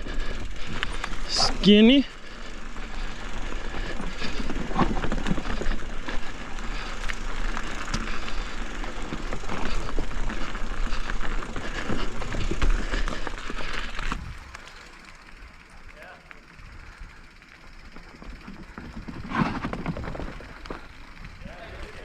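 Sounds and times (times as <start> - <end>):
bike rattling over bumps: 0.0 - 22.0
bike tyres rolling on trail: 0.0 - 22.0.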